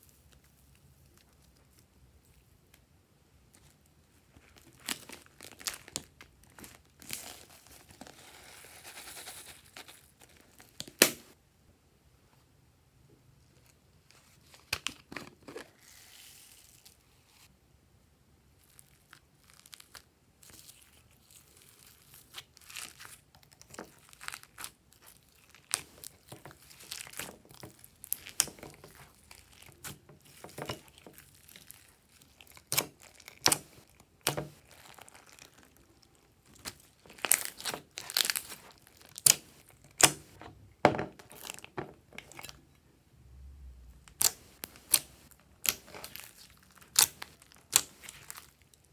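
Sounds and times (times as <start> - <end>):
slime popping and crackling: 18.9 - 40.4, 41.2 - 42.6, 44.1 - 48.9.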